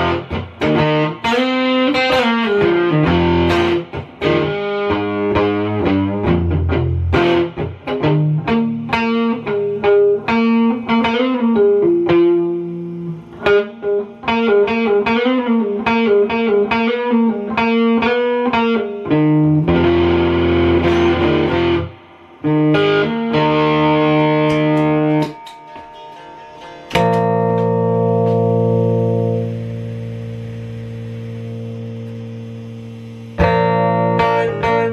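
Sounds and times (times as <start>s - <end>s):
electric guitar playing: 0.0s - 34.9s.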